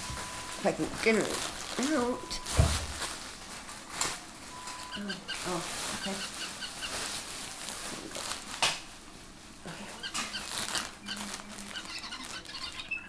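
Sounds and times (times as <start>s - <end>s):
packaging rustling and crinkling: 0.0s - 9.0s, 10.0s - 13.0s
sharp tear of packaging: 5.3s - 8.9s, 10.0s - 12.9s.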